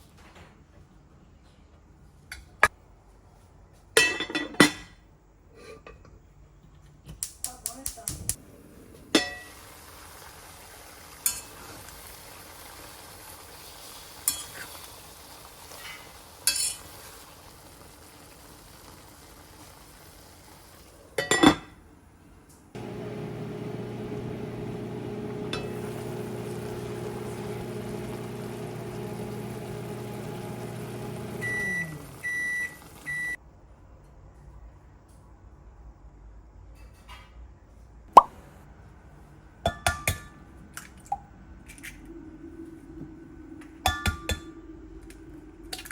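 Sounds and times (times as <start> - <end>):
dishes clinking: 4.0 - 5.0
microwave beeps: 22.8 - 33.4
microwave oven humming: 22.8 - 33.4.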